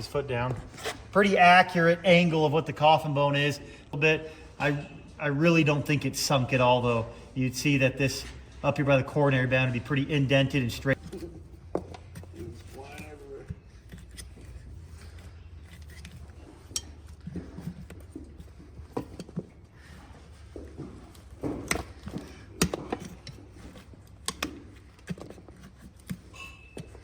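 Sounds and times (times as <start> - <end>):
hoof knife scraping hoof: 0.0 - 1.6, 7.6 - 27.0.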